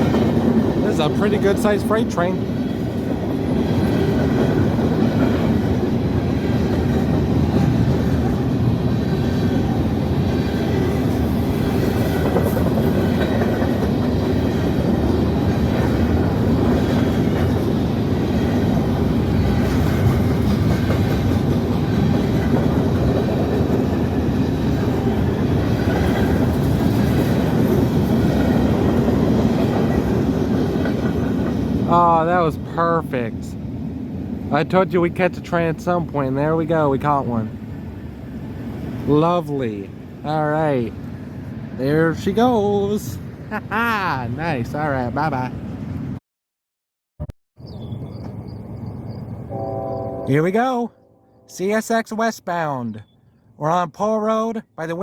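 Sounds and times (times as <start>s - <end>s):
freight train rumbling past: 0.0s - 46.2s, 47.9s - 52.8s
wheels clattering over rail joints: 10.1s - 31.8s.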